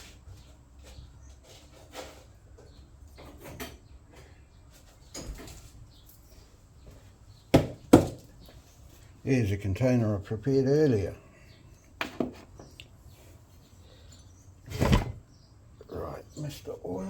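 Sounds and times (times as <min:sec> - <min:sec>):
loud sharp knocks: 0:07.5 - 0:08.2.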